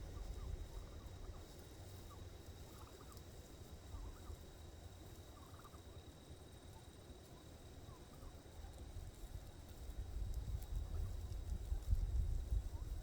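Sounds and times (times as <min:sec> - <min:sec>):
turkeys squeaking calls: 0:00.1 - 0:04.4, 0:05.3 - 0:05.9, 0:07.9 - 0:08.8.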